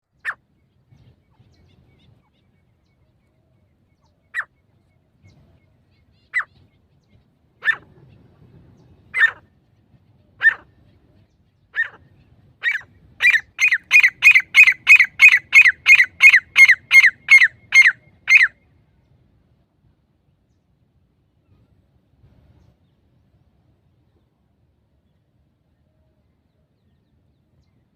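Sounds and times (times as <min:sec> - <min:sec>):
francolin calling: 0:11.7 - 0:18.6.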